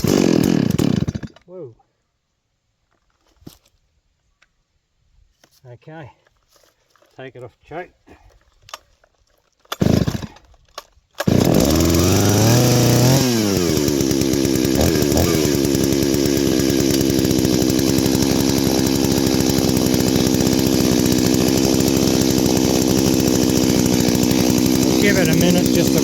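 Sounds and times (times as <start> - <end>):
chainsaw engine revving and idling: 0.0 - 1.4, 9.8 - 10.4, 11.2 - 26.0
chainsaw starter rattle: 0.0 - 1.4, 8.5 - 26.0.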